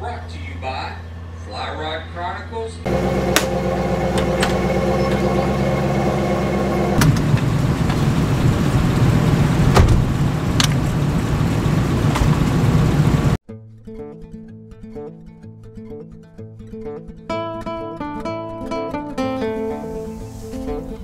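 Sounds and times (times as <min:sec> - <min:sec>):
vehicle engine running: 0:00.0 - 0:13.4.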